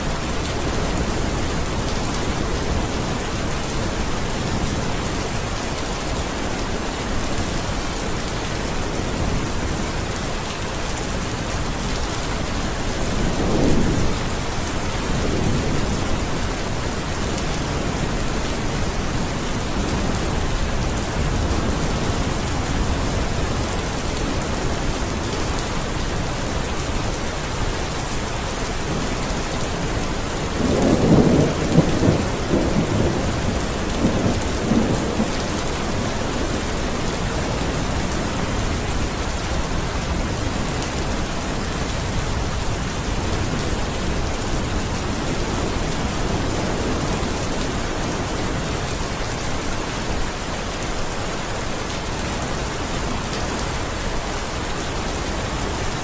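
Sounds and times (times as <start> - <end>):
steady rain falling: 0.0 - 56.0
thunder rumbling: 30.1 - 38.6.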